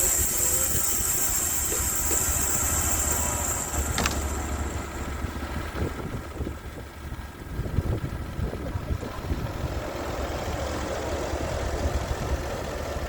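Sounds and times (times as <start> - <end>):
high whine: 0.0 - 6.8
sawmill engine running: 0.0 - 13.0.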